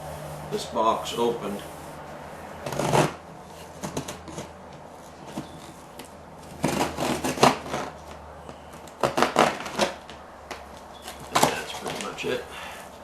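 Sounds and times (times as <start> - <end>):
cardboard scraping and rustling: 2.6 - 10.2, 11.0 - 12.4.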